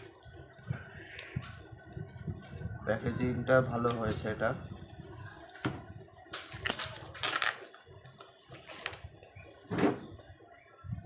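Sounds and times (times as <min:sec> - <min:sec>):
packaging rustling and crackling: 0:06.4 - 0:09.2.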